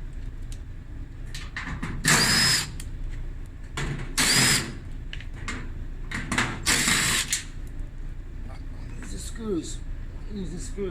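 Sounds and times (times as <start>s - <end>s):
power drill motor whine: 2.0s - 2.7s, 4.2s - 4.7s, 6.7s - 7.3s.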